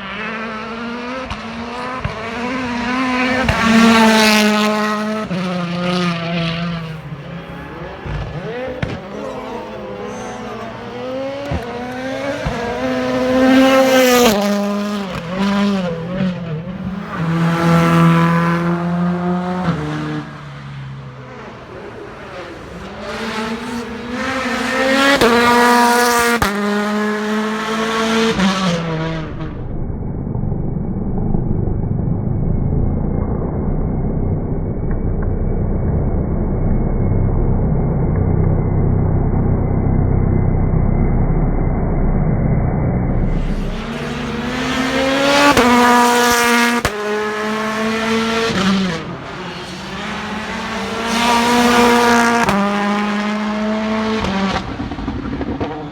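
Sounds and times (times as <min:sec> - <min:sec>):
rally car engines revving: 0:00.0 - 0:55.9
muffled low rumble: 0:28.8 - 0:45.7.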